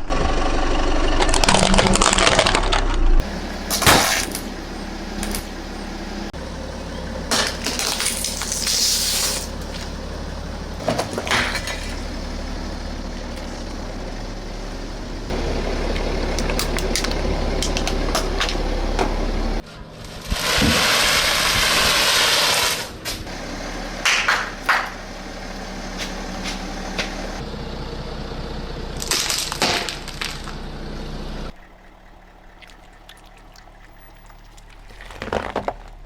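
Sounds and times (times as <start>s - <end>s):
car engine running low: 0.0s - 36.0s
sharp cracks: 1.2s - 5.6s, 24.0s - 25.1s, 29.0s - 30.6s
tyres crushing objects: 1.2s - 5.7s, 6.8s - 13.8s, 29.0s - 30.6s, 32.2s - 36.0s
hiss: 8.5s - 9.5s, 20.3s - 23.0s.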